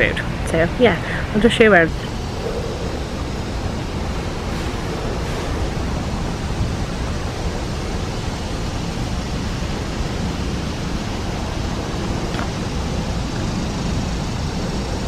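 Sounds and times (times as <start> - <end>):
steady rushing noise: 1.9 - 5.6.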